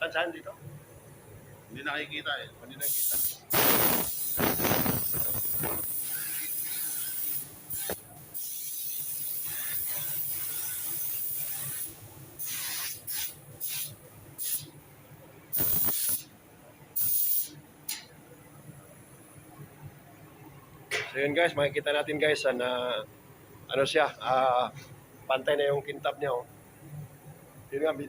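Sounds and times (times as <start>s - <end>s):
spray gun hissing: 2.8s - 14.7s, 15.6s - 16.3s, 17.0s - 17.5s.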